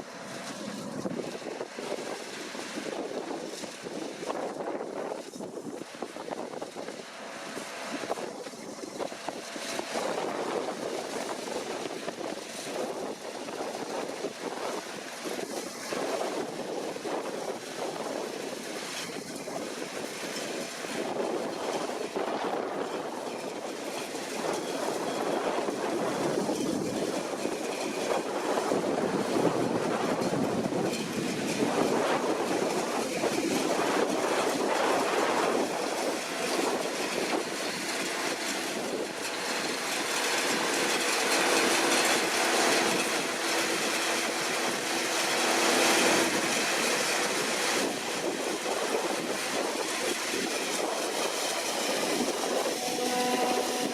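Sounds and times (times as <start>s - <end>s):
combine harvester running: 0.0s - 53.9s.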